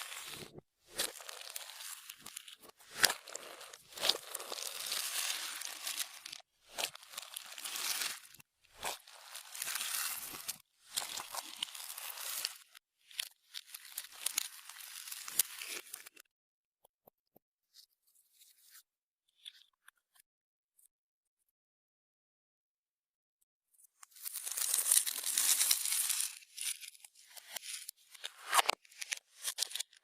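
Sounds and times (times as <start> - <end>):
slime stretched and squished: 0.0 - 16.2, 24.1 - 30.0.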